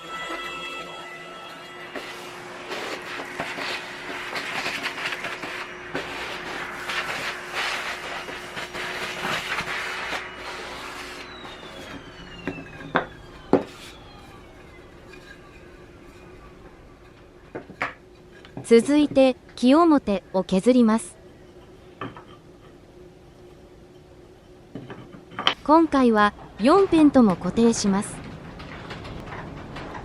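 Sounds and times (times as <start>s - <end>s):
router cutting wood: 0.1s - 14.4s
motor winding down: 2.3s - 16.9s.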